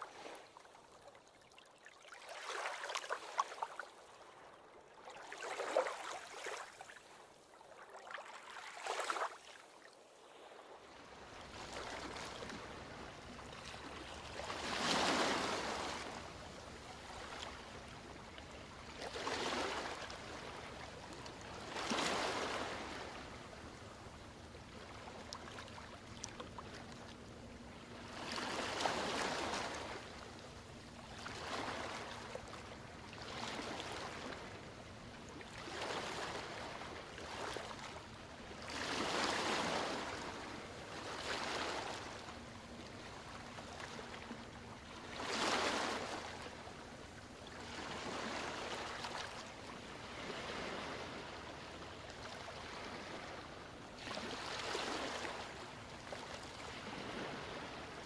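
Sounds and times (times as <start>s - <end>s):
ocean waves breaking on beach: 10.2s - 26.1s, 27.8s - 58.0s.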